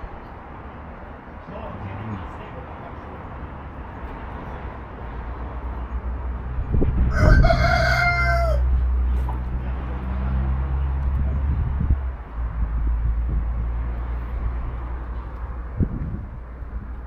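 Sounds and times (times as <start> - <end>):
rooster crowing: 7.1 - 8.7.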